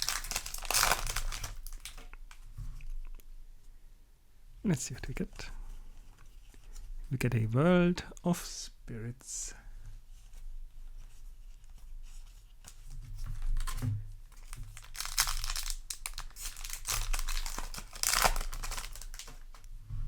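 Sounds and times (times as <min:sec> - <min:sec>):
foil wrapper tearing and crinkling: 0:00.0 - 0:02.3, 0:13.6 - 0:19.6.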